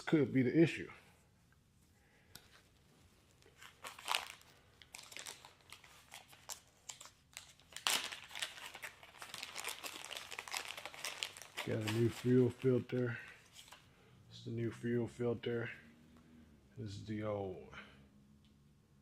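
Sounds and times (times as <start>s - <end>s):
plastic packaging crinkling: 3.2s - 13.9s.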